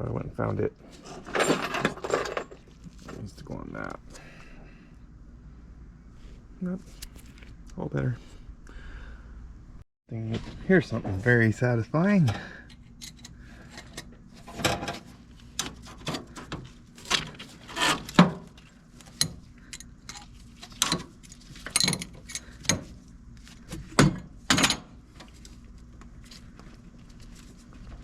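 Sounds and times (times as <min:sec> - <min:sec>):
faint steady hum: 0:00.0 - 0:28.0
metal tools scraping and clicking: 0:19.0 - 0:22.8.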